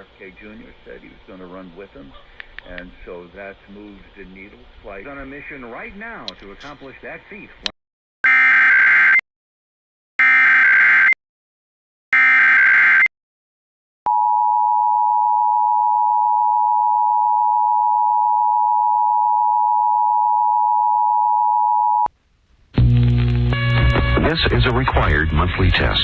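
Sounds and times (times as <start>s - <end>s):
steady loud attention tone: 22.8s - 26.0s.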